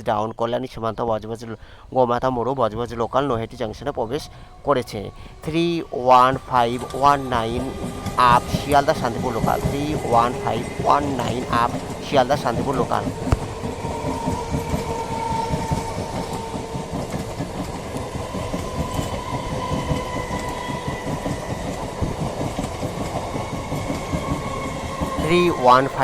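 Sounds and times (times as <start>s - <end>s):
faint whine: 2.7s - 15.1s
train wheels clattering: 3.7s - 26.0s.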